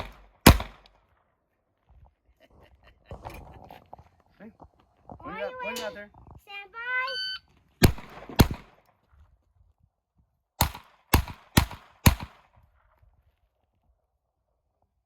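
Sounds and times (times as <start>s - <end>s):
pistol gunshots: 0.0s - 0.9s, 7.8s - 8.8s, 10.6s - 12.4s.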